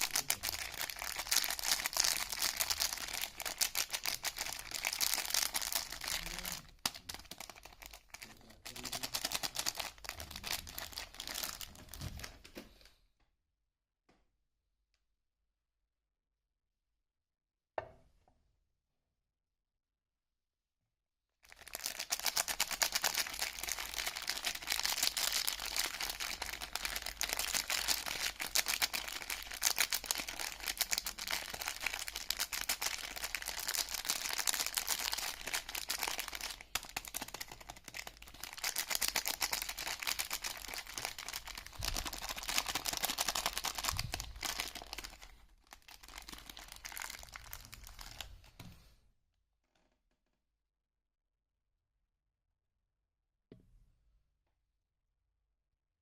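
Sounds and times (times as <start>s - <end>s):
wrapper crinkling: 0.0s - 12.4s, 21.5s - 48.5s.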